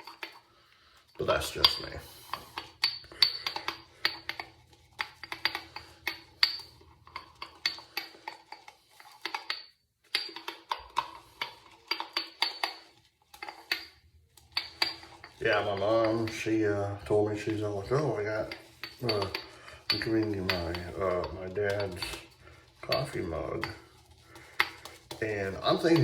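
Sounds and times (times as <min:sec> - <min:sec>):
shaving brush whipping lather in mug: 0:10.6 - 0:26.0.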